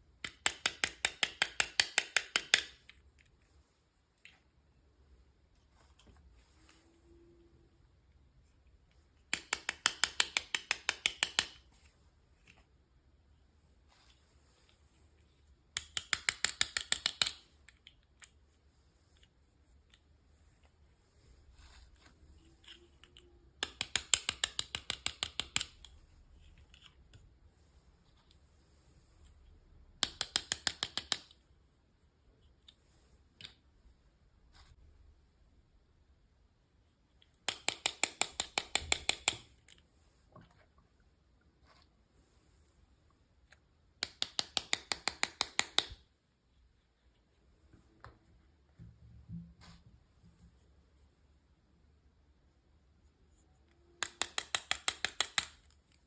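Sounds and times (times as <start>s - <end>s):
sharp clicks of small objects: 0.2s - 3.0s, 9.2s - 11.7s, 15.7s - 18.4s, 22.6s - 27.0s, 30.0s - 31.4s, 37.2s - 39.8s, 44.0s - 46.0s, 54.0s - 56.0s.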